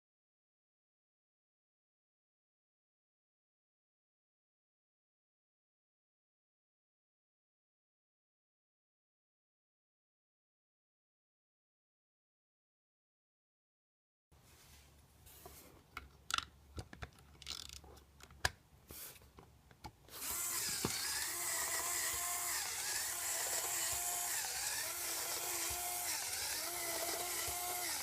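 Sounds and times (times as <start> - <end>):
plastic parts clicking: 15.9 - 18.6, 19.4 - 28.0
small electric motor whine: 20.1 - 28.0.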